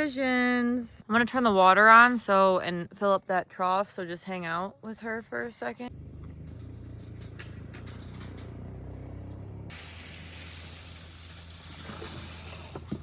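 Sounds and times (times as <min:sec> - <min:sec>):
water gushing from hose: 0:09.7 - 0:13.0.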